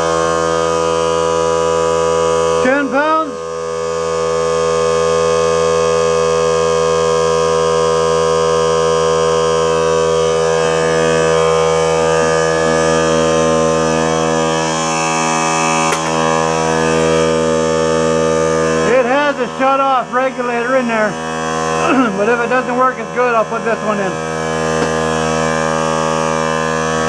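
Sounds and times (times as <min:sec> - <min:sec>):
portable air compressor running: 0:00.0 - 0:27.0.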